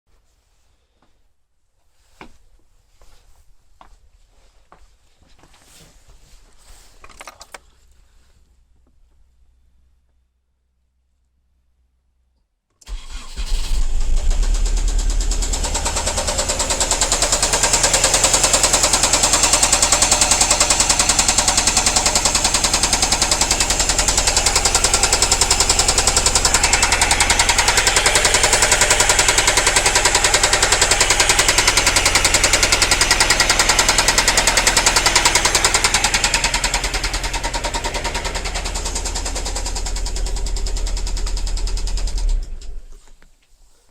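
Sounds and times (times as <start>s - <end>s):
car engine starting: 12.8s - 43.1s
engine running with rhythmic knock: 13.0s - 42.9s.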